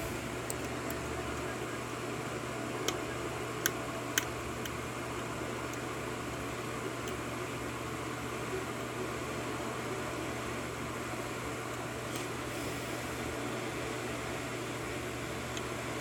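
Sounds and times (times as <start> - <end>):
fan-like hum: 0.0 - 16.0.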